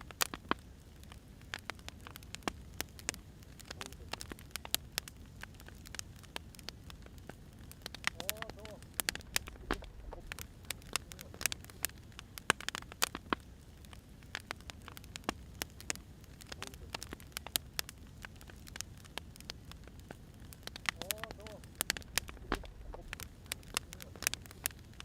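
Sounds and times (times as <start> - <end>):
wood fire crackling: 0.0 - 25.0
low steady rumble: 6.5 - 12.2, 16.8 - 25.0.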